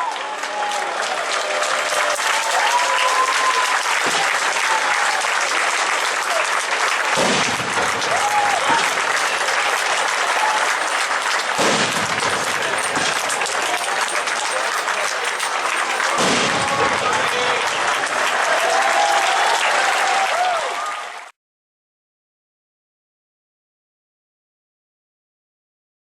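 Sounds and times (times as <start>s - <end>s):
crowd applauding: 0.0s - 21.3s.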